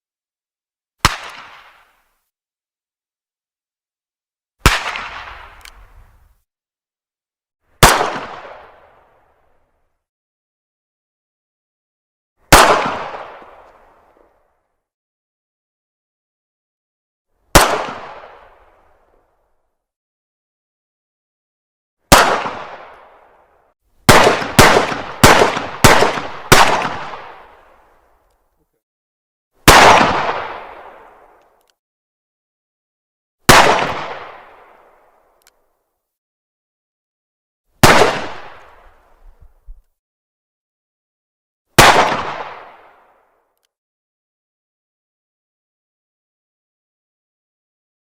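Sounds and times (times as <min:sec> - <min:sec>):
pistol shots with echo: 0:04.6 - 0:05.6, 0:07.8 - 0:08.9, 0:12.5 - 0:13.6, 0:17.5 - 0:18.5, 0:22.1 - 0:23.2, 0:24.1 - 0:27.7, 0:29.7 - 0:31.2, 0:33.5 - 0:34.7, 0:37.8 - 0:38.8, 0:41.8 - 0:42.9
faint click: 0:05.6 - 0:05.8, 0:31.4 - 0:31.8, 0:35.4 - 0:35.6.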